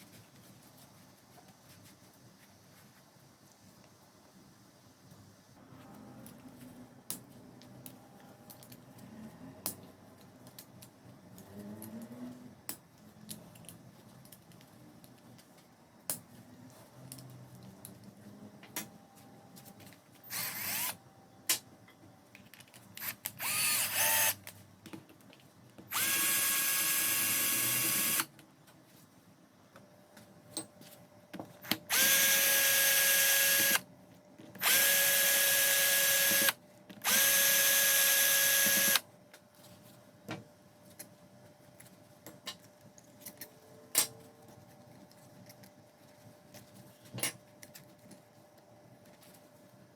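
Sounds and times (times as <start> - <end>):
electric drill running in bursts: 20.3 - 21.0, 23.0 - 24.4, 25.9 - 28.3, 31.9 - 33.8, 34.6 - 39.0.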